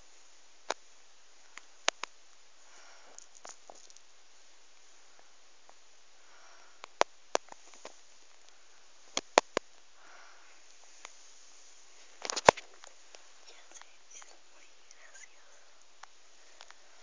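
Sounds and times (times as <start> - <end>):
woman breathing through nose: 2.6 - 3.3, 6.2 - 6.9, 10.0 - 10.7.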